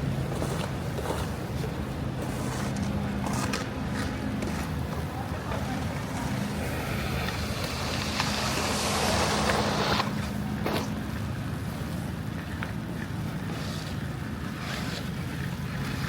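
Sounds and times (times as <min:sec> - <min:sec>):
low engine hum: 0:00.0 - 0:16.0
tyres hissing through wet snow: 0:06.2 - 0:11.0.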